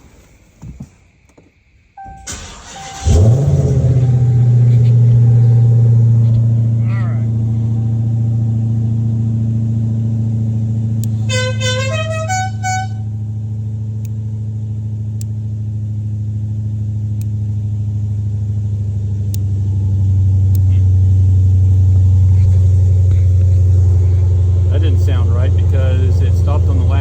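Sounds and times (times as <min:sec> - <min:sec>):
steady low hum: 0:03.0 - 0:27.0
musical air horn notes: 0:11.1 - 0:13.2.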